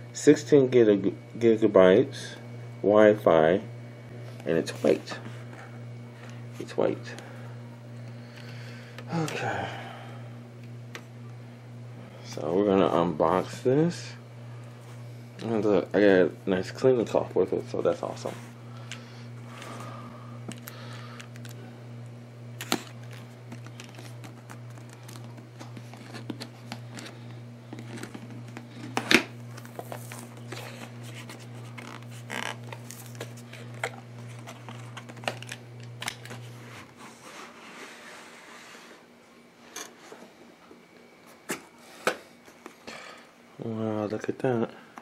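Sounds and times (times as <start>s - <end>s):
low steady hum: 0.0s - 45.0s
packaging crinkling and tearing: 22.6s - 36.6s.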